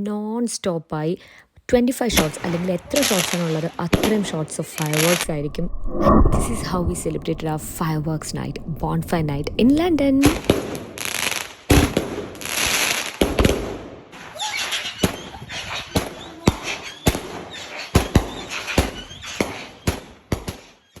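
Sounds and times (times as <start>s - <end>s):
firework bangs: 2.1s - 5.4s, 10.0s - 20.7s.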